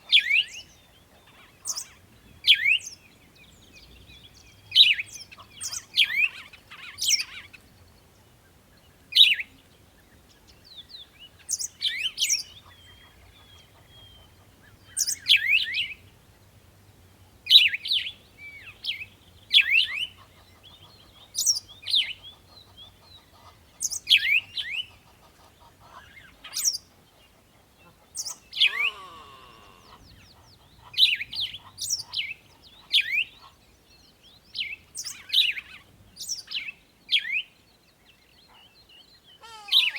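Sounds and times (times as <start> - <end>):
songbird chirping: 0.0 - 39.9
lower warbling bird call: 28.2 - 30.2.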